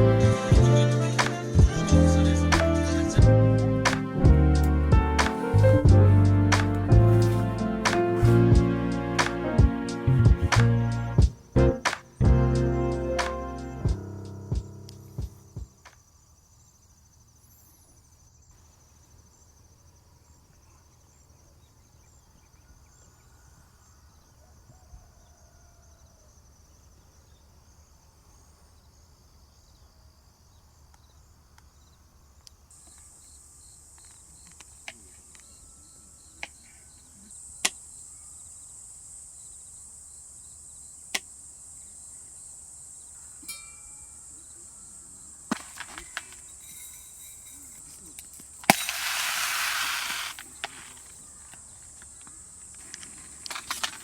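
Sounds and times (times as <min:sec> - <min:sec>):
insects trilling: 0:14.7 - 0:54.0
higher-pitched insect trill: 0:35.2 - 0:52.9.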